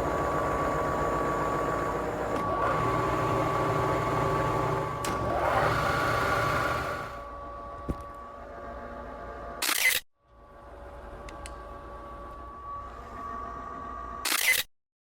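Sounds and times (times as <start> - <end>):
milling machine motor drone: 0.0 - 7.3.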